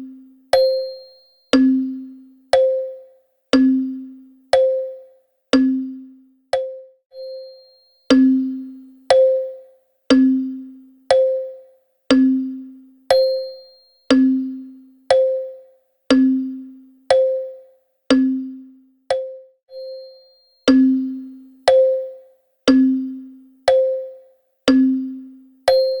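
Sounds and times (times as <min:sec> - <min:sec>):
wall clock ticking: 0:02.5 - 0:03.8, 0:04.5 - 0:05.8, 0:08.1 - 0:10.4, 0:11.1 - 0:12.4, 0:14.1 - 0:16.4, 0:20.7 - 0:26.0.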